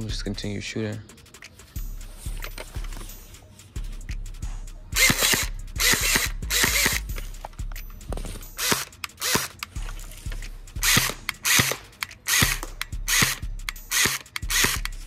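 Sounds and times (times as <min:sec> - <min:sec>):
airsoft rifle firing single shots: 0:10.9 - 0:13.4.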